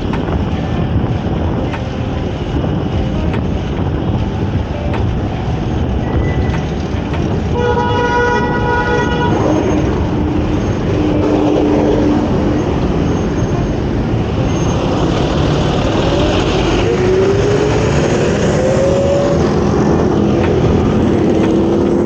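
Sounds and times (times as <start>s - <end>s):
low steady tone: 0.0s - 22.0s
traffic noise: 0.0s - 22.0s
wind: 0.0s - 22.0s
multi-tone vehicle horn: 6.0s - 13.8s.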